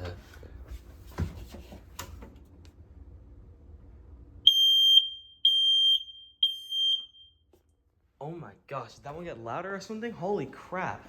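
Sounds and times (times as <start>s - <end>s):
smoke alarm beeping: 4.5s - 7.5s.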